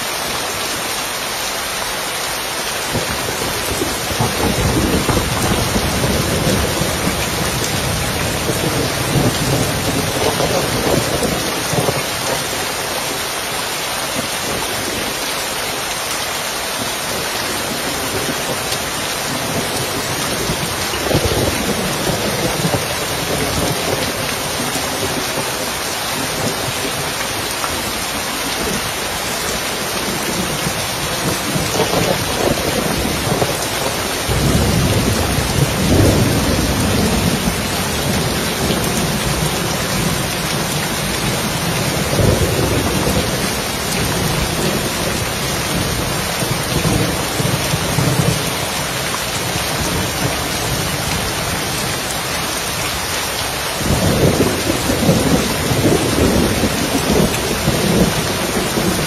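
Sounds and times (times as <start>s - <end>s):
rain on a roof: 0.0s - 59.0s
thunder rumbling: 2.9s - 12.7s, 17.1s - 27.1s, 29.8s - 48.5s, 53.8s - 59.0s.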